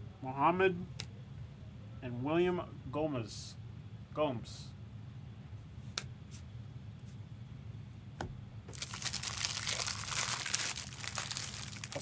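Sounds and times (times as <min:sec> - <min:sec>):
plastic packaging crinkling: 0:08.7 - 0:12.0.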